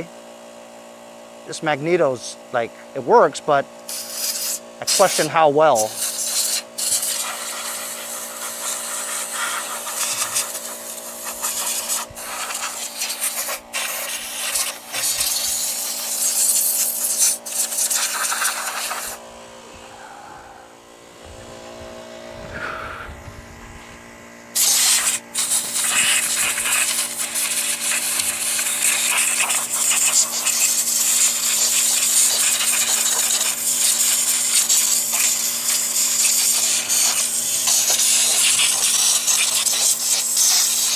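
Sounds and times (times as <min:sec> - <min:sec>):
faint steady hum: 0:01.4 - 0:25.5
compressed air blowgun hissing: 0:03.8 - 0:20.8, 0:22.4 - 0:23.3, 0:24.5 - 0:40.9.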